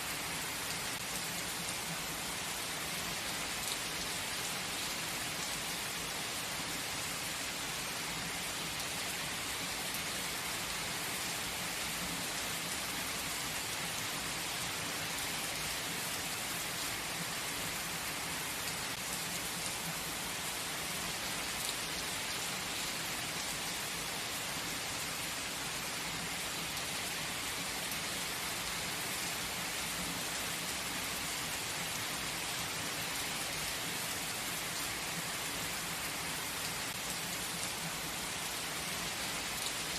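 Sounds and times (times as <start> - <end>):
gentle rain falling: 0.0 - 39.9.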